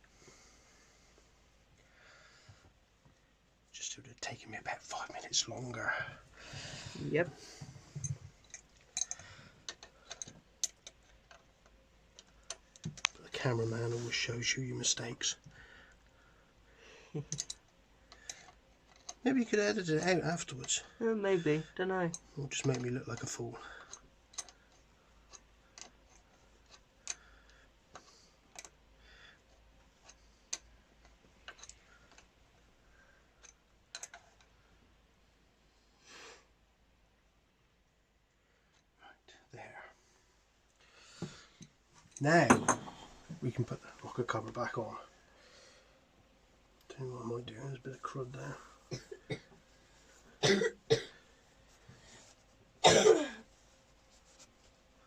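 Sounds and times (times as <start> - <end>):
hand tools clicking and tapping: 7.9 - 11.4, 17.3 - 19.2
man coughing: 48.9 - 49.5, 50.4 - 51.2, 52.8 - 53.4.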